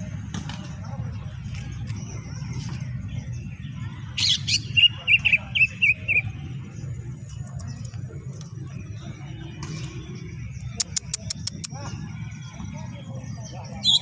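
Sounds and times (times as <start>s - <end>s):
bird singing shrill notes: 13.4s - 14.0s.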